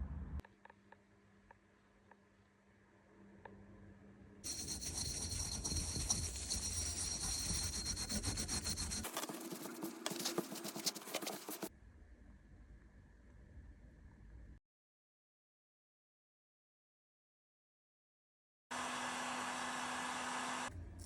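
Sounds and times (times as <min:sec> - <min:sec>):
hand scraping on a part: 0:04.5 - 0:11.7.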